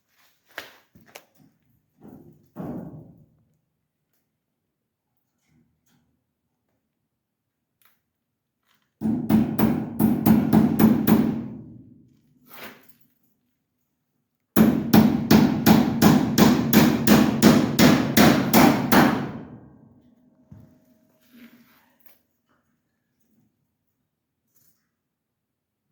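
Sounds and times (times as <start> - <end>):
hammer strikes: 9.0 - 11.6, 14.6 - 19.6.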